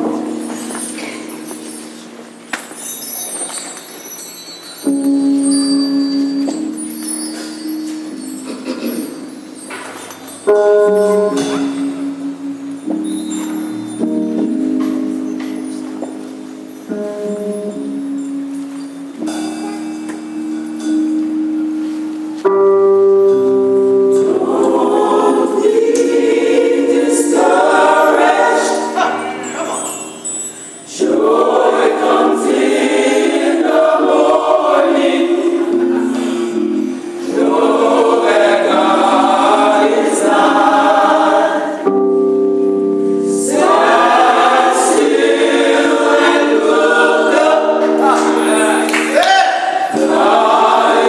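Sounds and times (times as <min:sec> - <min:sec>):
church choir singing gospel: 0:00.0 - 0:02.7, 0:24.0 - 0:51.0
held instrumental chords: 0:00.0 - 0:51.0.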